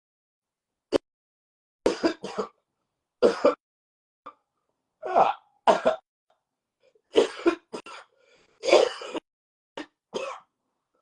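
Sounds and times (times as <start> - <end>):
man coughing: 5.2 - 6.0, 7.2 - 9.2.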